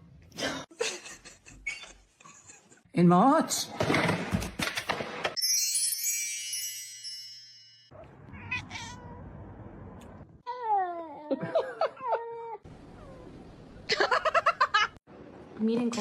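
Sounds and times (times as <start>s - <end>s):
ringing chime-like tone: 5.4s - 8.0s
cat meowing: 8.0s - 9.3s.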